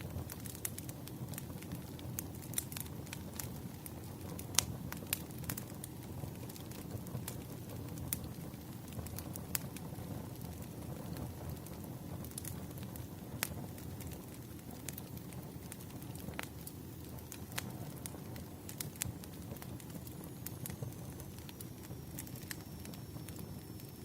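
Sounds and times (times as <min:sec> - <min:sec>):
fire pops and snaps: 0:00.0 - 0:24.0
wood fire crackling: 0:00.0 - 0:24.0.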